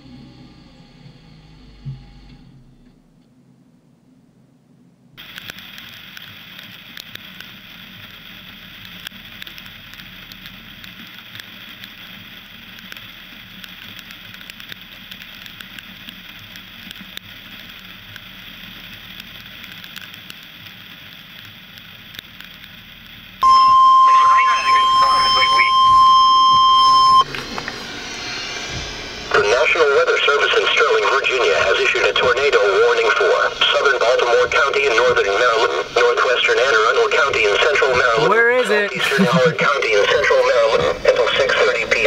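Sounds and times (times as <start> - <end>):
steady rain falling: 5.2 - 23.4, 27.2 - 42.0.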